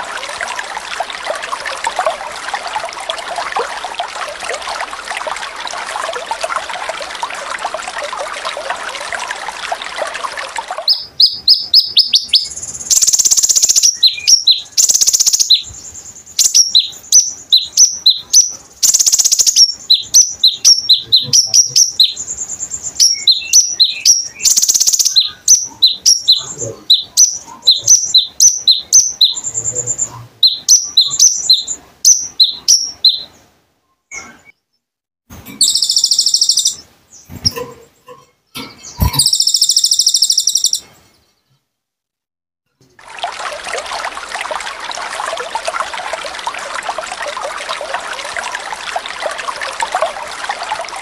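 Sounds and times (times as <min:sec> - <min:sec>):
bird chirping: 0:10.8 - 0:34.8, 0:35.5 - 0:41.6.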